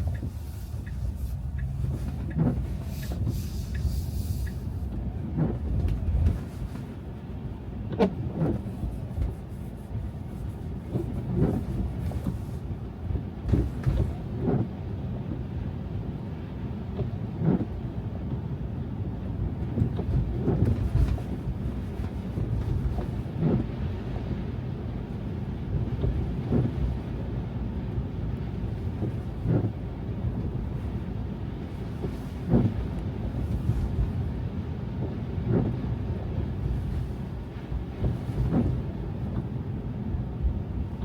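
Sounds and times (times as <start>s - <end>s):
car tyres and engine rumble: 0.0s - 41.0s
car thumping over bumps: 1.5s - 3.8s, 13.4s - 14.7s.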